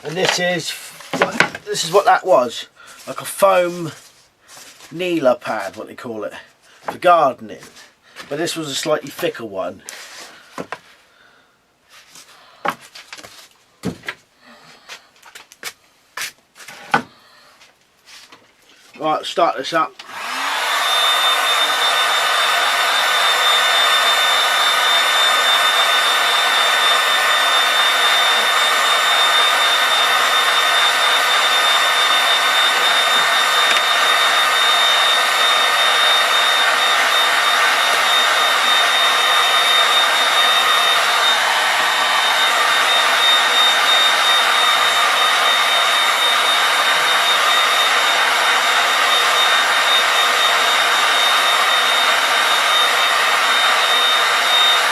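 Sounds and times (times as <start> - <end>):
heat gun blowing air: 20.0 - 54.9.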